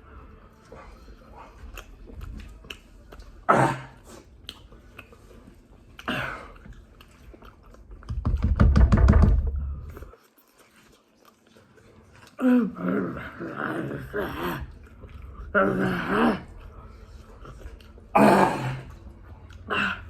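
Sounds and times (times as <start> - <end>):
person chewing: 0.5 - 8.2, 9.9 - 12.8, 14.4 - 20.0
low rumbling and rapid clicking: 8.0 - 10.1.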